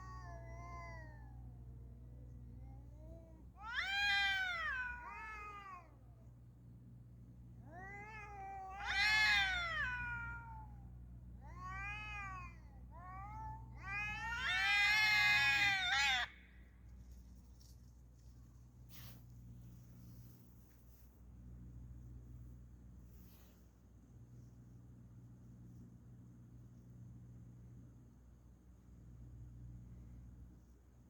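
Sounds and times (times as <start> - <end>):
cats yowling: 0.0 - 1.5, 2.6 - 6.1, 7.7 - 10.8, 11.4 - 16.4.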